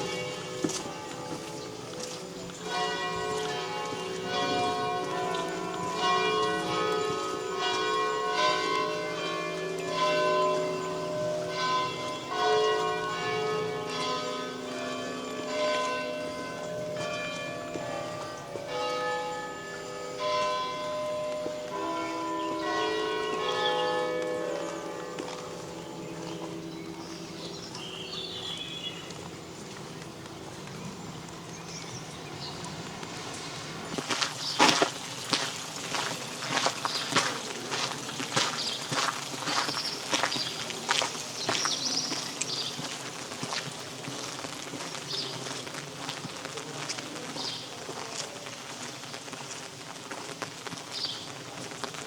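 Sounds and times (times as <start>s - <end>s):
church bells ringing: 0.0s - 35.0s.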